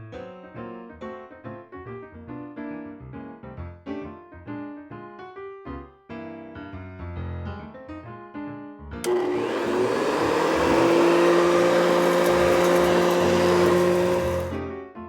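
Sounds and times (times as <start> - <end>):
motor whirring with whine: 9.1 - 14.6.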